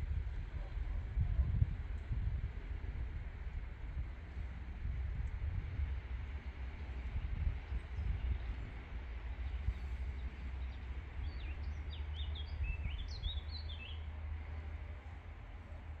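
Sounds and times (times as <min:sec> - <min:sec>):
low outdoor rumble: 0:00.0 - 0:16.0
songbird chirping: 0:09.4 - 0:14.1.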